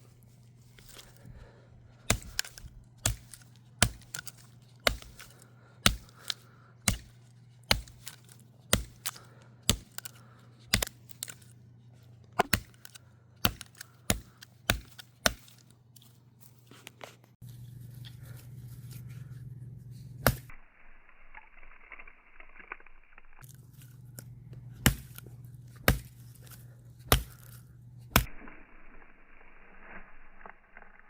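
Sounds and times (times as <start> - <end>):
knife chopping into wood: 2.1 - 11.4, 12.4 - 15.6, 20.2 - 20.5, 24.8 - 25.2, 25.8 - 26.3, 27.0 - 27.5.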